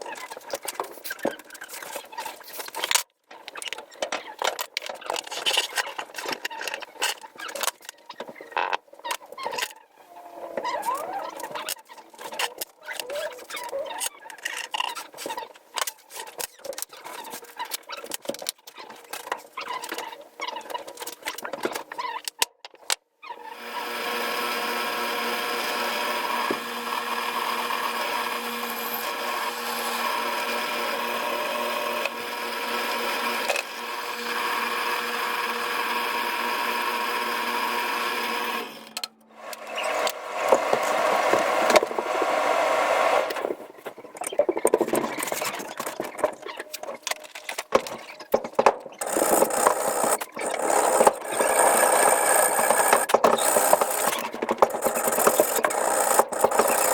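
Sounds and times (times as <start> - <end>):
power tool motor running: 23.4 - 43.6, 49.0 - 56.9
scraping and grinding strokes: 39.4 - 48.4.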